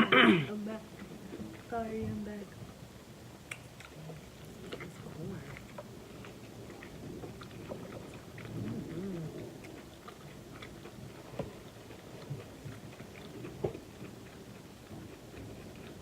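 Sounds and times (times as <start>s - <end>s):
person chewing: 3.4s - 16.0s.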